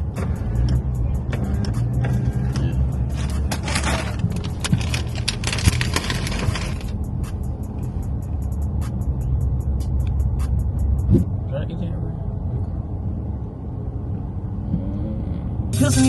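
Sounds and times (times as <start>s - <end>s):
music playing: 0.0s - 11.2s, 15.7s - 16.0s
car engine and road rumble: 0.0s - 16.0s.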